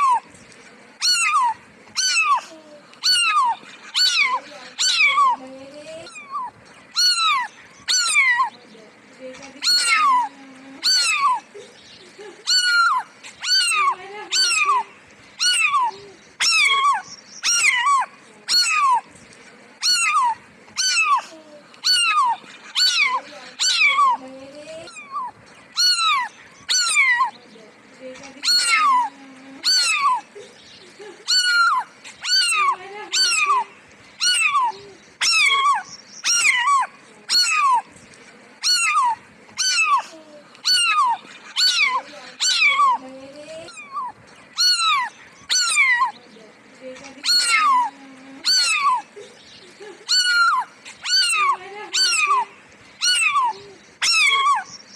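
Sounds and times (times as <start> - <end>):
cat meowing: 1.0 - 2.4, 3.0 - 5.4, 6.1 - 8.5, 10.8 - 11.4, 15.4 - 19.0, 19.8 - 21.2, 21.8 - 24.2, 29.6 - 30.2, 34.2 - 37.9, 38.6 - 40.0, 40.6 - 43.0, 43.7 - 46.1, 47.2 - 49.0, 50.1 - 52.4, 53.0 - 54.7.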